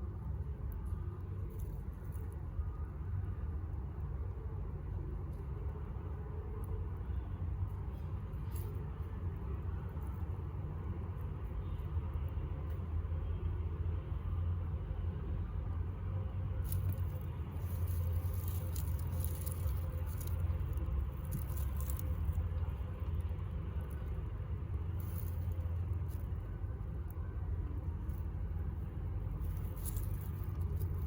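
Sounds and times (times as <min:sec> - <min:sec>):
rustling and crackling: 0:16.6 - 0:31.0.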